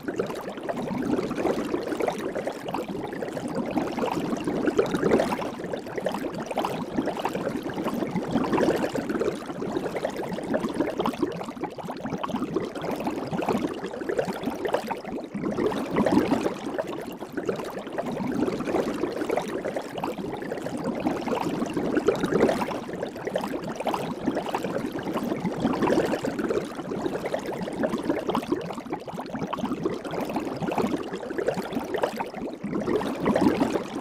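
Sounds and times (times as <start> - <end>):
soapy water bubbles popping: 0.0 - 34.0.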